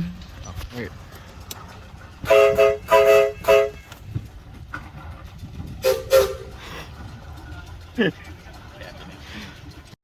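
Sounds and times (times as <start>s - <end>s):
train chime horn blasts: 2.2s - 3.9s, 5.8s - 6.6s.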